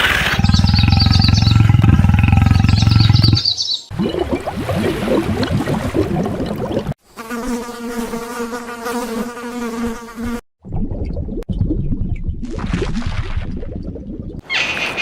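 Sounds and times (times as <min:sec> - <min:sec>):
flying insect buzzing: 0:07.1 - 0:10.4.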